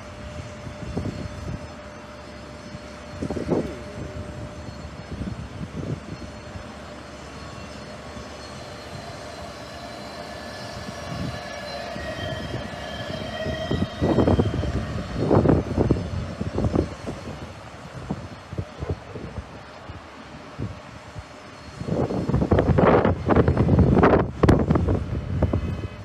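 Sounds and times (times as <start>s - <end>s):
jet engines whining: 2.5s - 18.1s
wind buffeting microphone: 8.5s - 19.7s, 21.8s - 26.0s.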